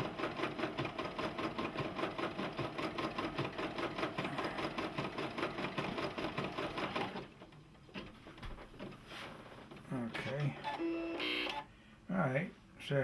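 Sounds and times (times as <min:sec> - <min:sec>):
embroidery machine stitching: 0:00.0 - 0:07.2.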